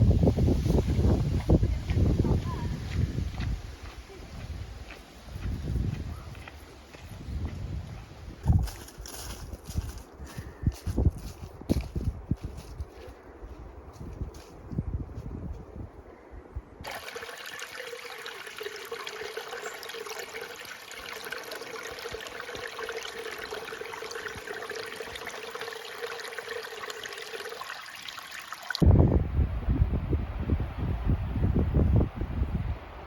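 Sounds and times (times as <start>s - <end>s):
wind buffeting microphone: 0.0s - 16.9s, 28.8s - 33.0s
stream water rushing: 16.8s - 28.9s.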